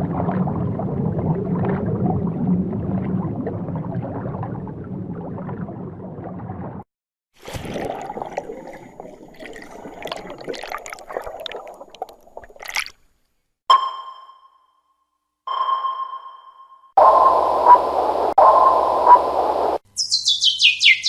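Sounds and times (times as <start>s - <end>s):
bubbling and gurgling water: 0.0s - 13.0s
low rumbling water ambience: 0.0s - 13.2s, 17.0s - 19.8s
sonar-like ping: 13.7s - 17.8s.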